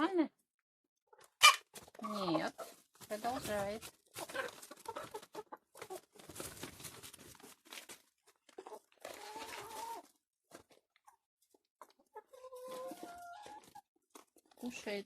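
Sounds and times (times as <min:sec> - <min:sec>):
hen clucking: 0:01.1 - 0:06.4, 0:08.2 - 0:10.1, 0:11.0 - 0:14.9
hens pecking at feed: 0:01.1 - 0:15.0.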